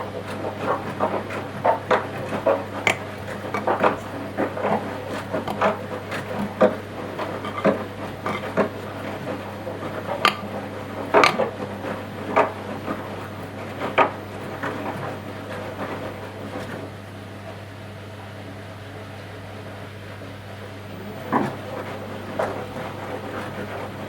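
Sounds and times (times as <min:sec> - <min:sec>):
low motor hum: 0:00.0 - 0:12.4
washing machine drum turning: 0:10.0 - 0:11.6
clinks and knocks in drum: 0:10.2 - 0:10.5, 0:11.2 - 0:11.5.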